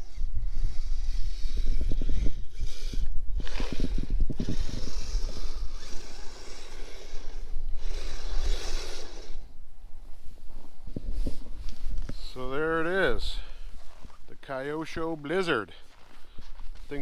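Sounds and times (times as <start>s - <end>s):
toy tractor motor and tracks: 0.0s - 9.7s
wind buffeting microphone: 0.0s - 17.0s.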